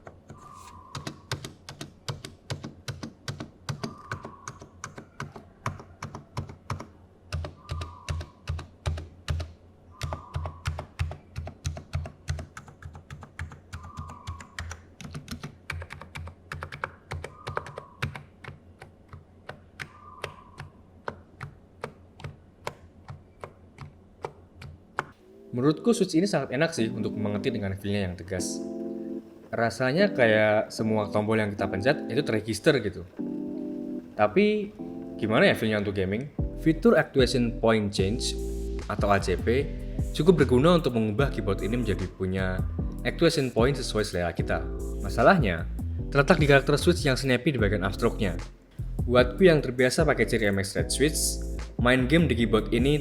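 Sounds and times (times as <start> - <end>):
keyboard typing: 0.0 - 25.2.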